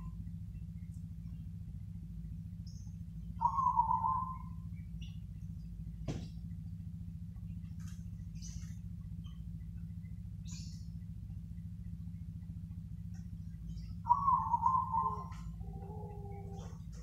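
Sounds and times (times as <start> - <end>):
steady low hum: 0.0 - 17.0
dove cooing: 3.4 - 4.7, 13.8 - 17.0.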